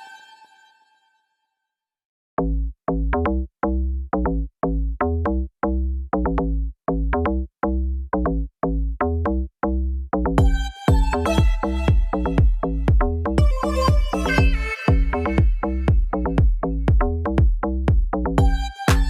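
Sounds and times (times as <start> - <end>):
electronic music with heavy bass beat: 10.2 - 19.0.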